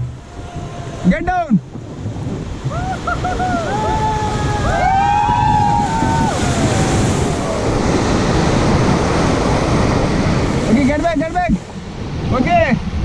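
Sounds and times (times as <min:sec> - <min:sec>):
whitewater rushing: 0:00.0 - 0:13.0
people whooping: 0:02.7 - 0:07.8.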